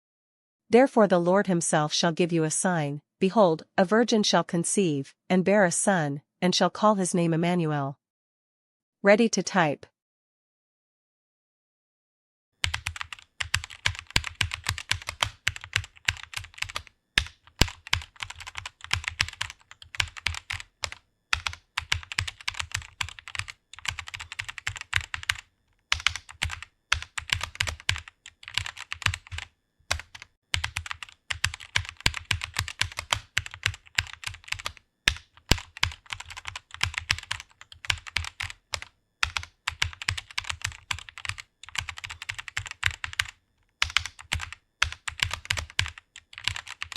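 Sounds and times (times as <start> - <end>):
fast typing on keyboard: 12.6 - 46.9.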